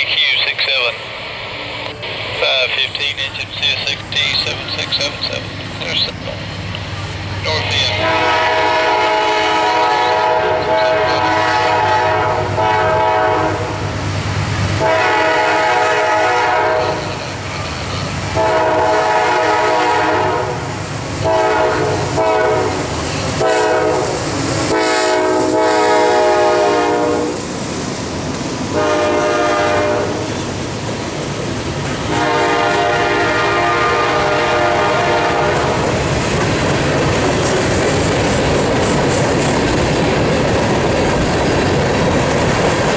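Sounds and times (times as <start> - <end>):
locomotive air horn blasts: 7.8 - 13.8, 14.8 - 17.0, 18.3 - 20.6, 21.2 - 27.4, 28.8 - 30.3, 32.1 - 35.8
train wheels clattering: 35.8 - 42.9.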